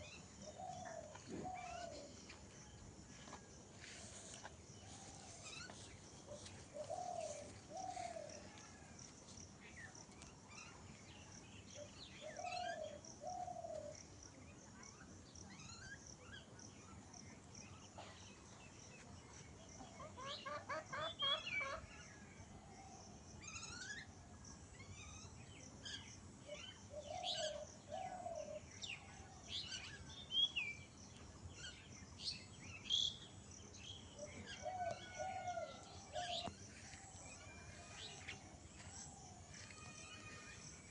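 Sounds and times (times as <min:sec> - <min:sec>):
doves cooing: 0:00.0 - 0:02.2, 0:06.3 - 0:08.8, 0:26.9 - 0:28.7
small birds chirping: 0:00.0 - 0:08.8.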